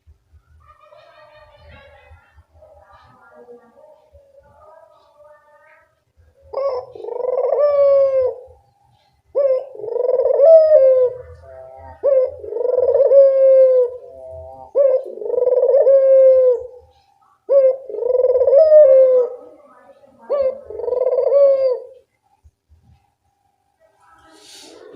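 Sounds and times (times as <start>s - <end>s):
dove cooing: 6.2s - 22.4s.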